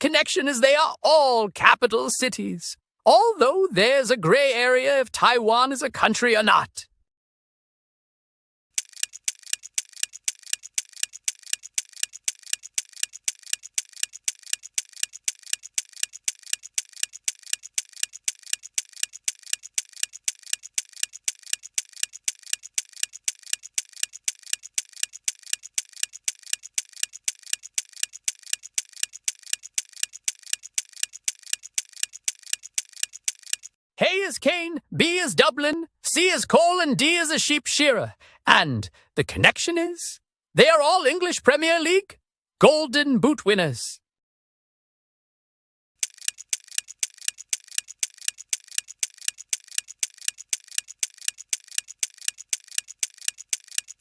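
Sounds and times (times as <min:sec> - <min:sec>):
clock ticking: 0:08.8 - 0:33.7, 0:46.0 - 0:54.0.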